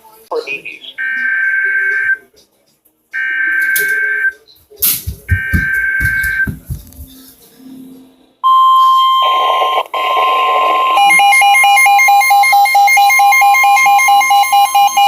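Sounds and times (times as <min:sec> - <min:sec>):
steady alarm tone: 0:05.3 - 0:06.5, 0:09.2 - 0:15.0.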